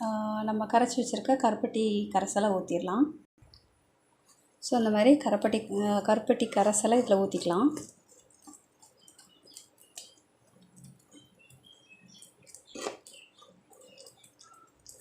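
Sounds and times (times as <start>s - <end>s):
small clicks and pops in pan: 7.8s - 15.0s.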